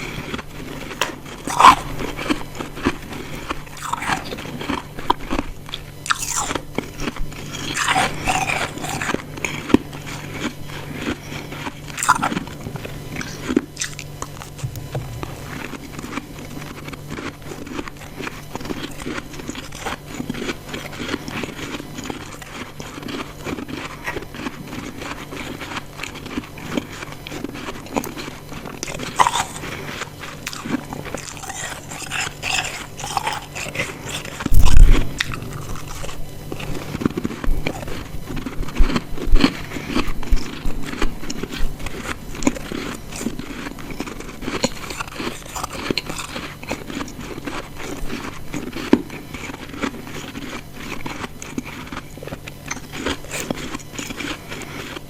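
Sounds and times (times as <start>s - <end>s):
chewing ice crunches: 0.0s - 55.0s
loud low thud: 14.6s - 15.7s.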